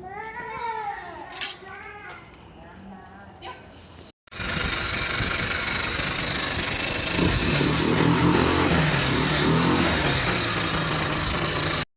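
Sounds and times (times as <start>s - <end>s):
scooter engine revving: 4.3s - 11.9s.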